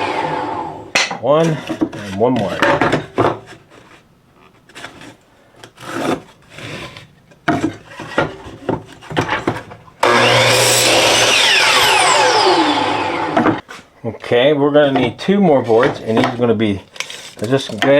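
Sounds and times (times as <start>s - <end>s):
power saw cutting wood: 0.0s - 1.0s, 10.0s - 13.6s.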